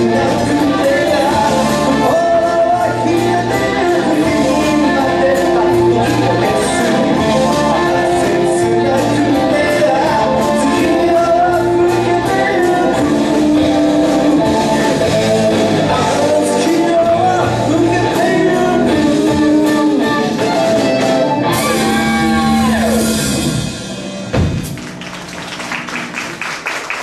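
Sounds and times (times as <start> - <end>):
live band with singer: 0.0 - 25.2
audience clapping: 24.6 - 27.0.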